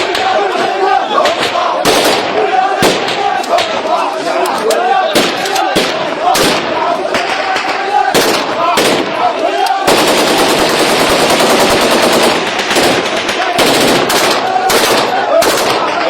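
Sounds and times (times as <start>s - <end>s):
crowd voices: 0.0s - 16.0s
automatic gunfire: 1.8s - 3.3s, 5.2s - 16.0s.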